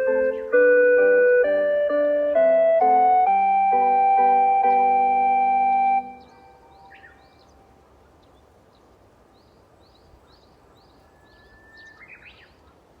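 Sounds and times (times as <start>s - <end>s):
bird whistling song: 0.0s - 2.6s, 4.1s - 7.6s, 11.1s - 12.6s
loudspeaker chime echo: 0.0s - 6.8s
birds chirping: 0.0s - 8.8s.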